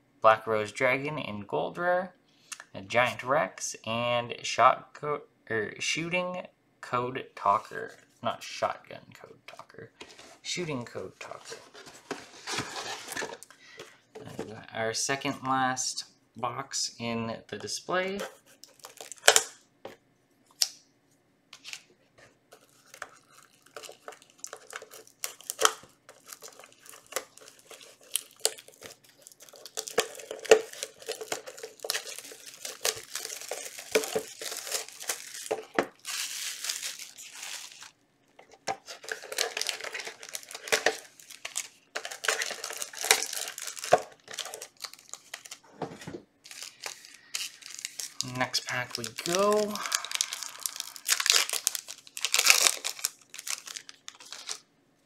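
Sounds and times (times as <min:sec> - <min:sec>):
packaging crinkling and tearing: 0:11.2 - 0:13.6, 0:18.2 - 0:19.6, 0:21.6 - 0:45.7, 0:46.4 - 0:54.7.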